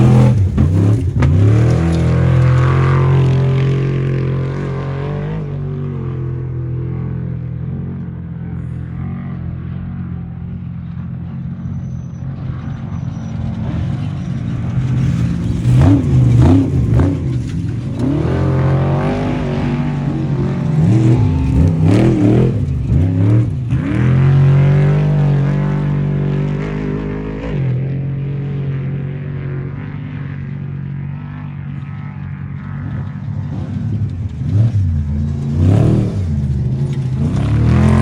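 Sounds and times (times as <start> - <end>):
truck engine revving: 0.0 - 7.9, 11.6 - 28.9, 33.5 - 38.0.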